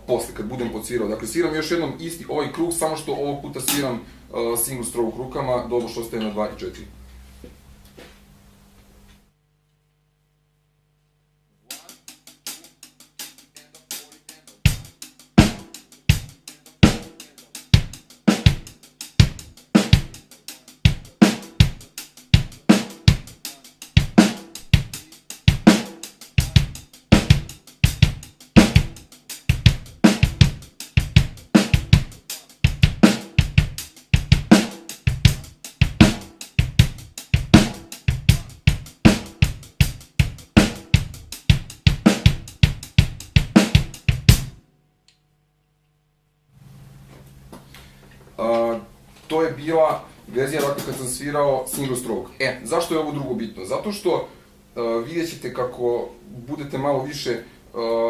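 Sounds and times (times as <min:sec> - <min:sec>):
hi-hat strokes: 0:11.6 - 0:44.6
snare drum: 0:11.7 - 0:44.6, 0:50.5 - 0:52.1
bass drum: 0:14.4 - 0:44.6.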